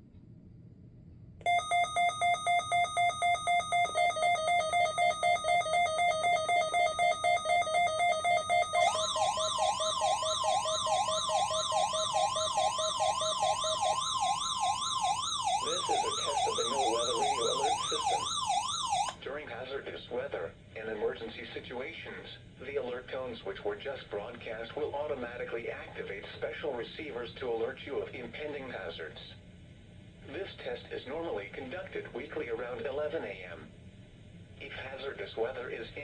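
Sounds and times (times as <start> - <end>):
rapidly pulsing beep: 1.5 - 19.2
steady tone: 1.5 - 19.2
warbling siren tone: 2.4 - 19.2.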